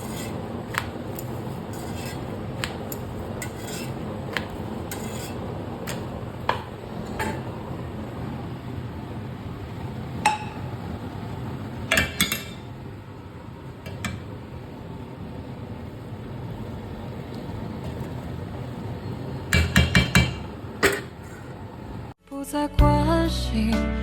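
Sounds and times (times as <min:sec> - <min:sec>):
utensils clinking on cookware: 0:00.0 - 0:07.6, 0:10.2 - 0:10.7, 0:11.9 - 0:12.8, 0:19.5 - 0:21.4.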